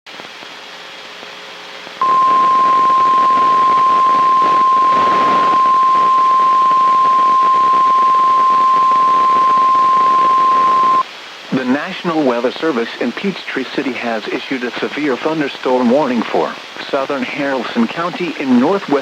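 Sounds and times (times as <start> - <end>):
radio static: 2.0 - 11.0
steady alarm tone: 2.0 - 11.0.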